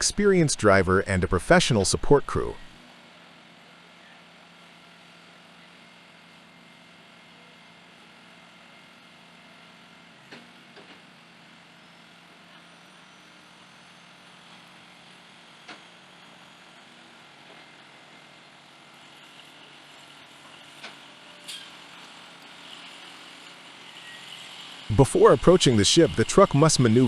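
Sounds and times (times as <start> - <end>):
faint vehicle noise: 10.4 - 27.0.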